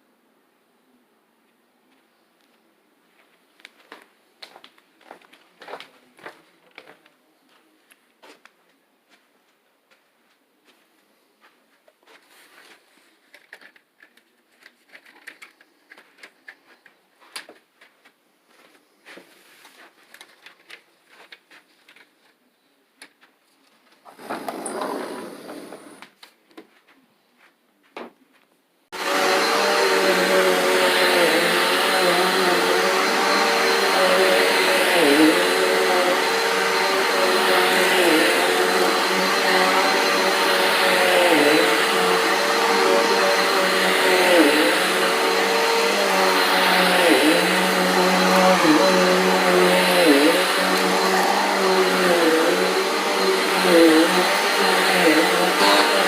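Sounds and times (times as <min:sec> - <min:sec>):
vacuum cleaner running: 0:24.1 - 0:26.0, 0:29.0 - 0:56.0.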